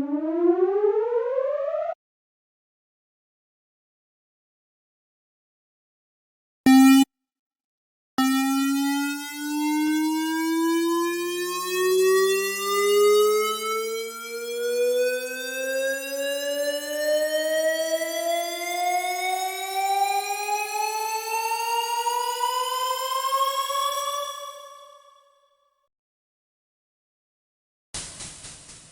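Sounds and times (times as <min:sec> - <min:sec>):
lower rising synth tone: 0:00.0 - 0:02.0, 0:08.2 - 0:11.0.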